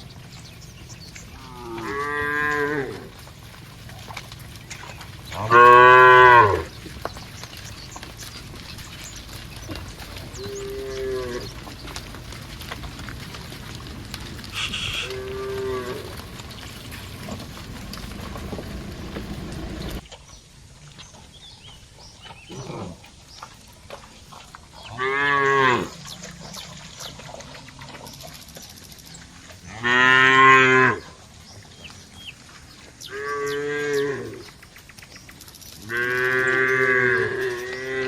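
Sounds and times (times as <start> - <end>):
cattle mooing: 1.4 - 3.3, 5.2 - 6.8, 9.7 - 20.0, 24.9 - 26.0, 29.7 - 31.1, 33.1 - 34.5, 35.8 - 38.0.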